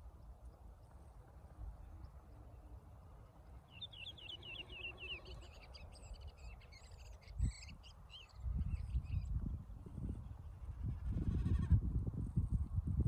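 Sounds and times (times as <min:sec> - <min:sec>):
small bird chirping: 0:03.7 - 0:09.3.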